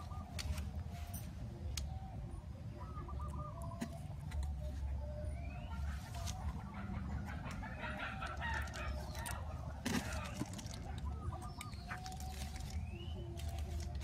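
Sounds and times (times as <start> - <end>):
chicken calling: 1.9 - 14.0.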